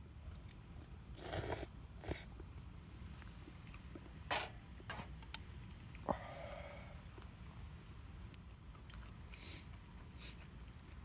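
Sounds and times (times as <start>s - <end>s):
person eating: 1.2s - 2.4s.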